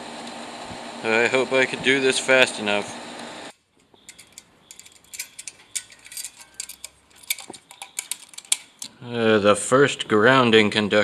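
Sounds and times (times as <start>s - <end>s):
clicks and metallic taps of tools: 3.8s - 9.0s.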